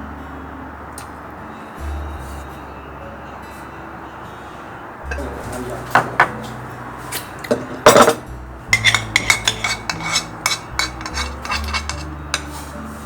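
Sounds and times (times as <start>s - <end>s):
cutlery and dishes clinking: 5.1s - 6.6s, 7.2s - 12.7s.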